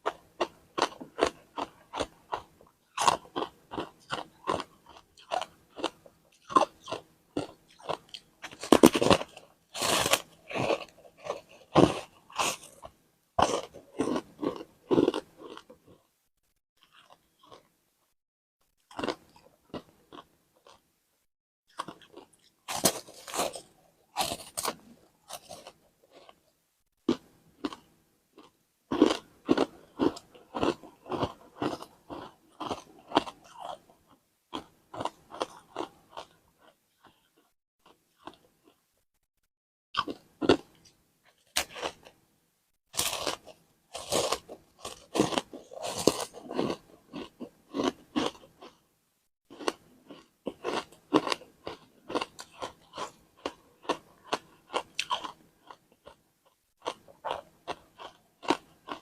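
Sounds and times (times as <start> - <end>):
chewing: 0.0 - 15.8, 16.8 - 17.7, 27.1 - 38.8, 43.0 - 48.8, 49.5 - 59.0
ice crunching in mouth: 3.0 - 15.7, 21.8 - 26.4, 43.0 - 48.8.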